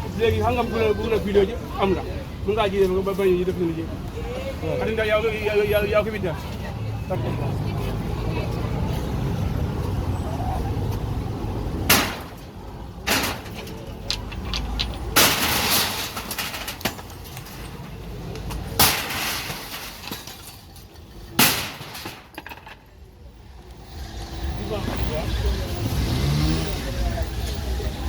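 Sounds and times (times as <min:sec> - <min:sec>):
vehicle engine rumble: 0:01.5 - 0:28.0
loud sharp demolition bangs: 0:11.8 - 0:13.7, 0:15.0 - 0:17.0, 0:18.8 - 0:20.3, 0:21.3 - 0:22.4
debris clatter: 0:11.8 - 0:18.0, 0:18.6 - 0:23.0.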